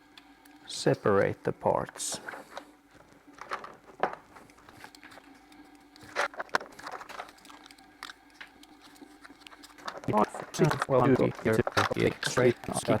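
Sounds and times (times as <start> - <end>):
small items clicking in plastic box: 3.3 - 5.2, 6.0 - 13.0.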